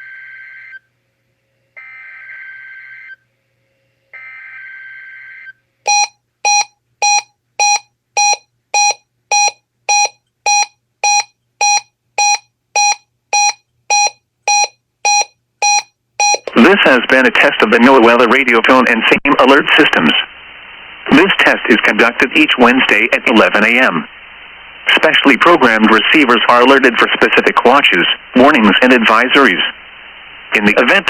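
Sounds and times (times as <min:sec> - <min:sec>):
electronic beeping: 0:05.9 - 0:16.7.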